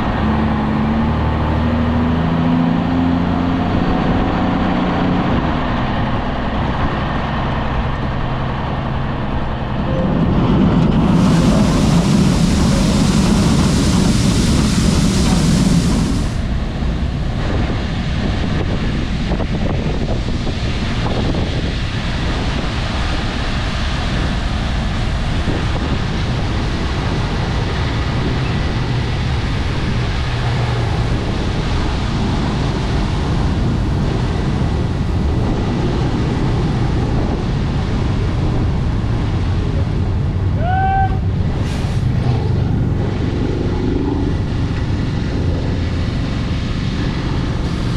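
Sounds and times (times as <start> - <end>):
farm machinery running: 3.7 - 40.5, 41.3 - 47.9.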